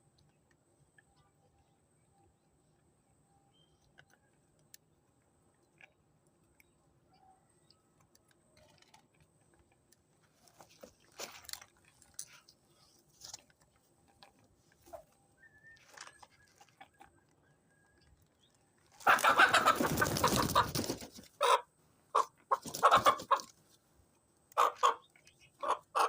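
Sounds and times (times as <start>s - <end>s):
chickens pecking: 8.0s - 23.9s, 24.5s - 26.0s.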